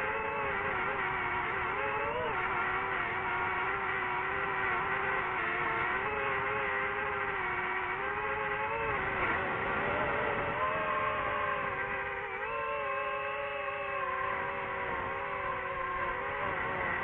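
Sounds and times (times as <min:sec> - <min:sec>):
drone propellers whining: 0:00.0 - 0:17.0.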